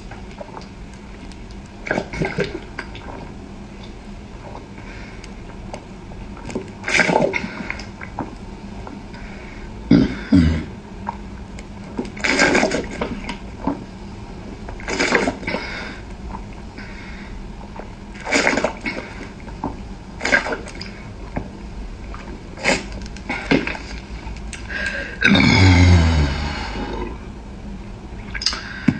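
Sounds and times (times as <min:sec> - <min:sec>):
slurping: 0:25.2 - 0:27.4.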